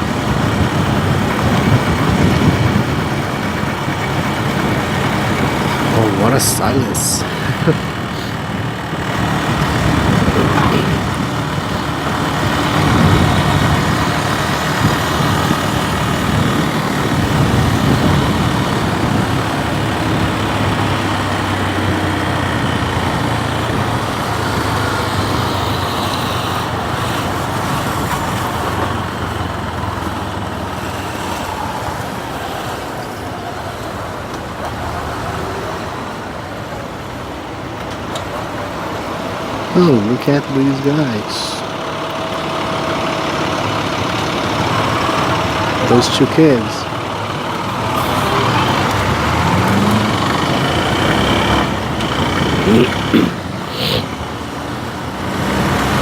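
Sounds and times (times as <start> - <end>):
motorcycle engine running: 0.0 - 31.8, 41.5 - 56.0
traffic noise: 0.0 - 56.0.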